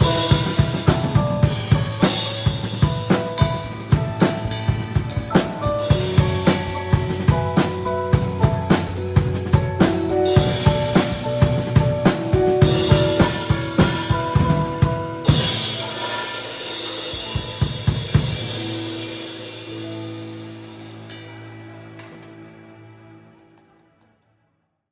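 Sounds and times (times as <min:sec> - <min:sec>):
drum kit beat: 0:00.0 - 0:21.4
keyboard and bass chords: 0:00.0 - 0:23.8
crash cymbal: 0:15.2 - 0:22.0.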